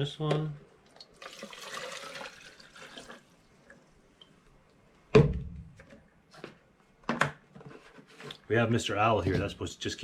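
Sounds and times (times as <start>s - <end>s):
liquid pouring into feeder: 0.9s - 3.3s.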